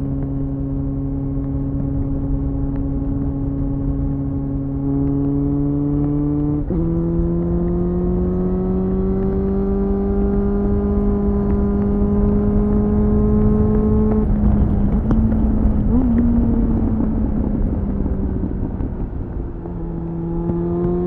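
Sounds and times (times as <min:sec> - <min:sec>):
wind rush: 0:10.3 - 0:21.0.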